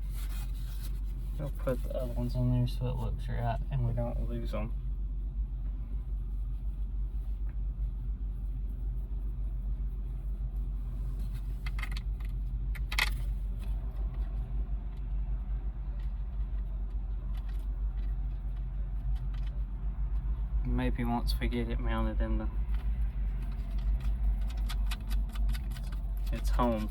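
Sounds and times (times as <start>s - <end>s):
engine idling: 0.0s - 26.9s
light metallic clicks and rattles: 11.2s - 15.2s, 15.8s - 20.4s, 22.6s - 26.9s.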